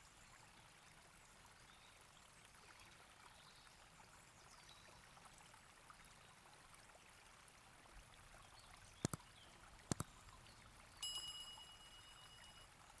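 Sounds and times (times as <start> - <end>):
quick double clicks: 9.0 - 10.1
light ringing clink: 11.0 - 12.8.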